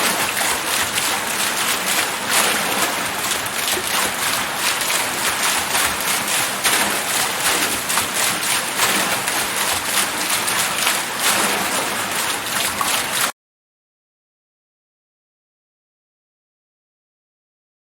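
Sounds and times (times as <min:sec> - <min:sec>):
water wheel splashing water: 0:00.0 - 0:13.3.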